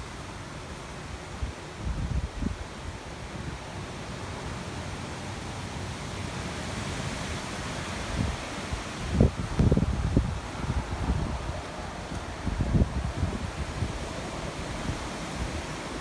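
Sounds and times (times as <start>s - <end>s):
wind rushing over microphone: 1.4s - 3.0s, 6.8s - 16.0s.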